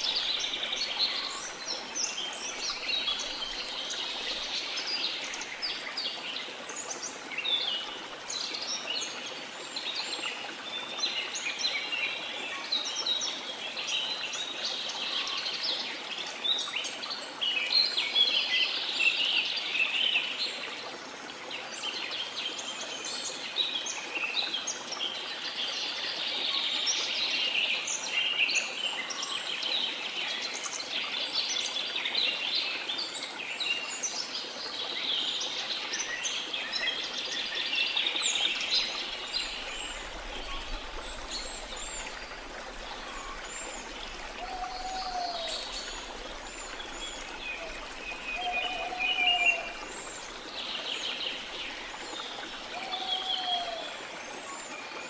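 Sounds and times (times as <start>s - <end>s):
birds singing and chirping: 36.0s - 54.0s.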